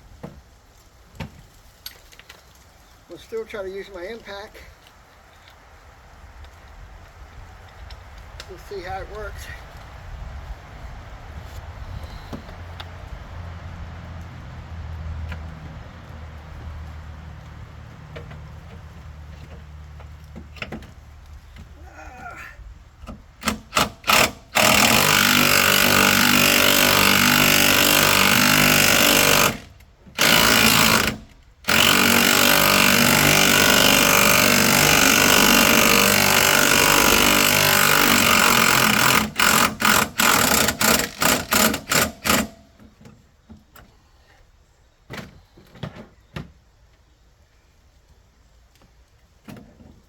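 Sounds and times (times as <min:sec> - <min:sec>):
impact wrench hammering: 0:23.4 - 0:42.7.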